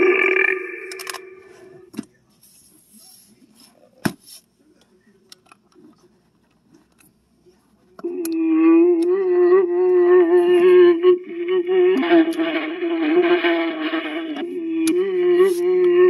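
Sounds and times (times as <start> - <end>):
electronic toy sound effect: 0.0 - 1.8.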